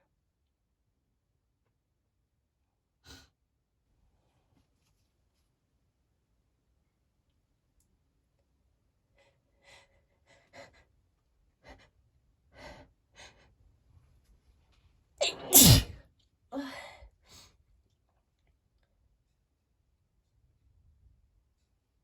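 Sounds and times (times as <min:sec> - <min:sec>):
breathy exhales: 0:15.2 - 0:16.0
loud wet sneeze: 0:15.2 - 0:16.0.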